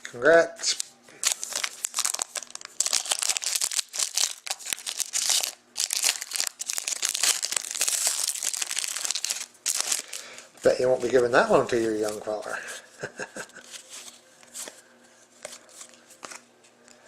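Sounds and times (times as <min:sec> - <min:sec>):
plastic wrapper crinkling: 0:00.7 - 0:12.4.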